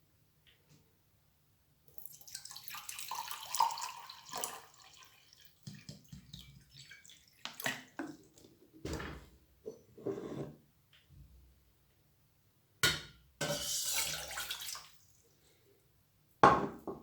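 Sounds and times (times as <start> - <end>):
water pouring and splashing: 2.0 - 8.5, 13.5 - 15.1.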